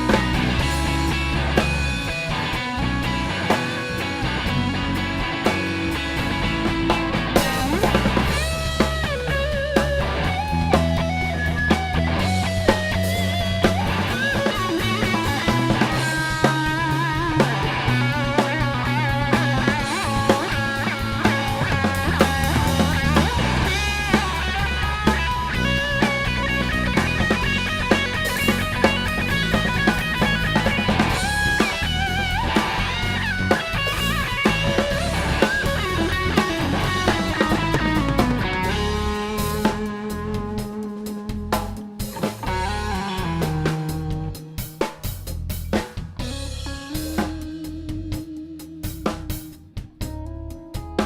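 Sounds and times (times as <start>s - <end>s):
bass guitar: 0.0s - 51.0s
steady drum beat: 0.0s - 51.0s
wavering lead guitar: 0.0s - 51.0s.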